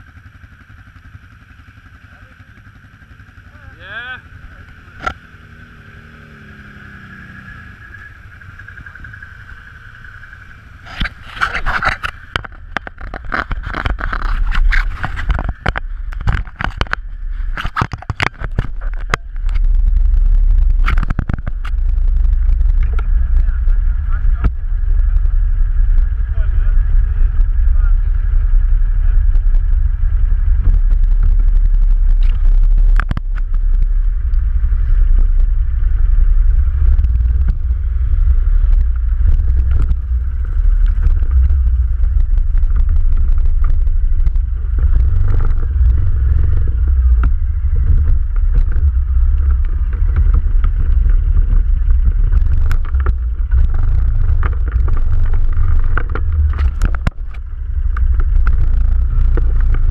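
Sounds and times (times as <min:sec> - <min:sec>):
atv engine rumble: 0:00.0 - 0:59.9
sharp knocks and rattles: 0:10.8 - 0:19.7.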